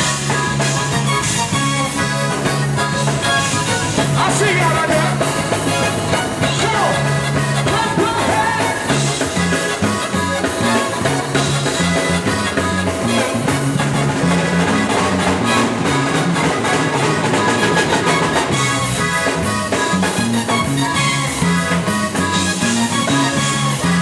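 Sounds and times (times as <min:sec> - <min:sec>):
repeating bass line: 0:00.0 - 0:24.0
zydeco band playing dance music: 0:00.0 - 0:24.0.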